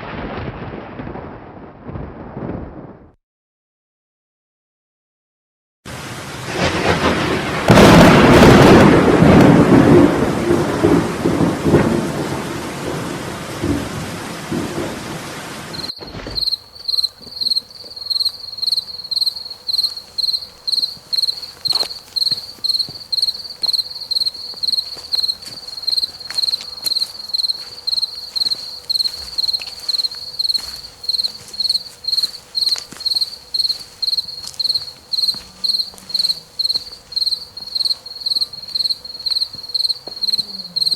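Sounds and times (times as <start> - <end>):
rain: 0.0 - 1.5, 5.9 - 40.9
thunderclap: 0.0 - 3.2, 6.0 - 26.6
cricket chirping: 7.6 - 12.3, 15.7 - 40.9.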